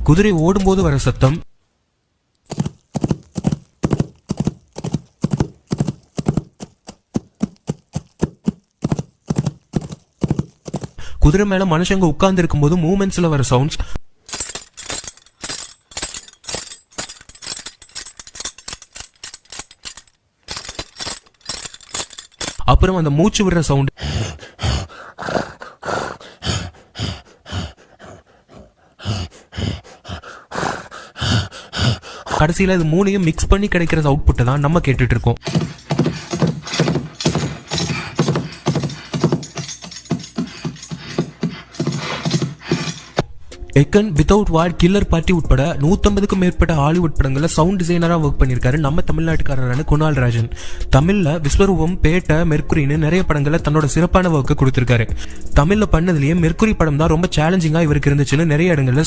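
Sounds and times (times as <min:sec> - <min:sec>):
galloping horse hoofbeats: 0:02.5 - 0:11.0, 0:35.4 - 0:43.2
horse heavy breathing: 0:02.5 - 0:11.0, 0:14.4 - 0:22.6, 0:23.9 - 0:32.6, 0:35.4 - 0:43.2.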